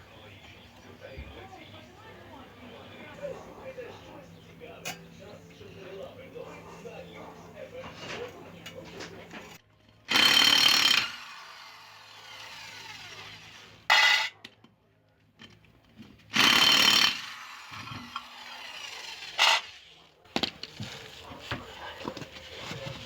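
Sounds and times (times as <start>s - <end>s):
power tool bursts: 10.1s - 14.3s, 16.3s - 19.9s.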